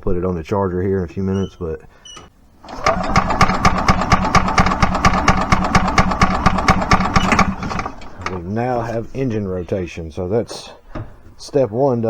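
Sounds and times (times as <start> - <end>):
engine cranking on starter: 2.6 - 8.4.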